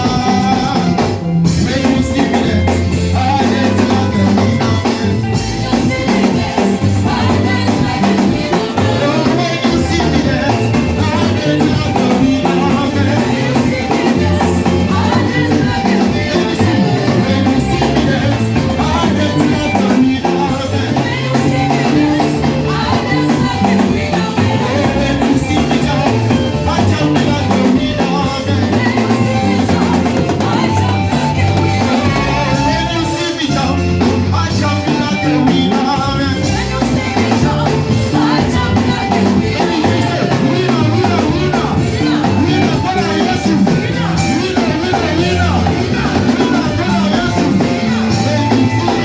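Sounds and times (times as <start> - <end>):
band playing upbeat dance music: 0.0 - 49.0
person singing: 0.0 - 49.0.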